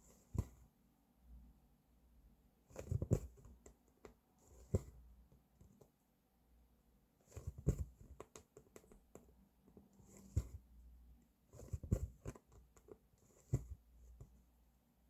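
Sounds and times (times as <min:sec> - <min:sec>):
needle and thread through fabric: 0:02.7 - 0:06.0, 0:07.2 - 0:10.8, 0:11.4 - 0:14.6.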